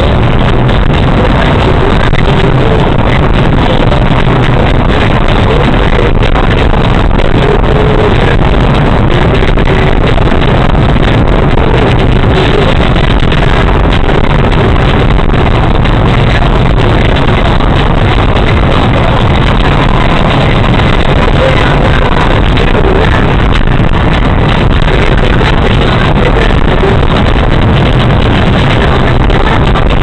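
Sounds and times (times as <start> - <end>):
car engine hum: 0.0 - 30.0
road rumble: 0.0 - 30.0.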